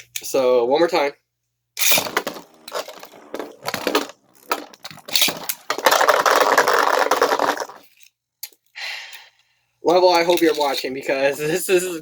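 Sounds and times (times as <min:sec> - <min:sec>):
spinning tops clattering and grinding: 0:01.8 - 0:08.1.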